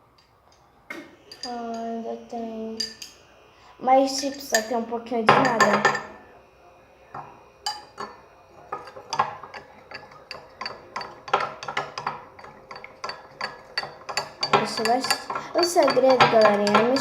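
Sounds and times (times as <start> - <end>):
spoon scraping and clinking bowl: 7.7 - 17.0.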